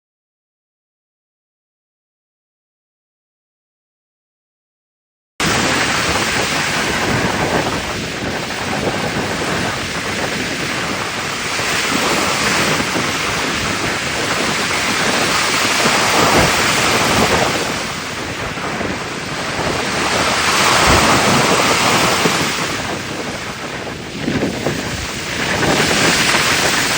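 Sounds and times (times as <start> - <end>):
ocean waves washing over pier: 5.4 - 26.9.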